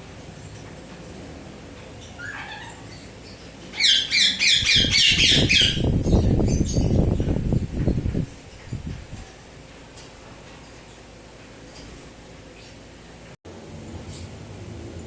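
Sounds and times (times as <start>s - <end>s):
parakeet squawking: 2.0s - 7.0s
low rustling and thumps: 5.8s - 10.6s.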